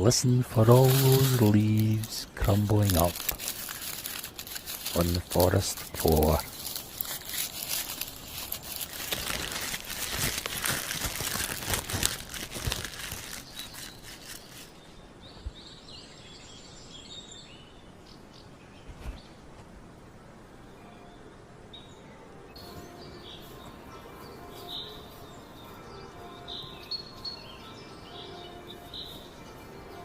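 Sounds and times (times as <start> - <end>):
footsteps on dry leaves: 0.0 - 14.8, 22.6 - 30.0
small birds chirping: 0.0 - 19.5, 20.6 - 30.0.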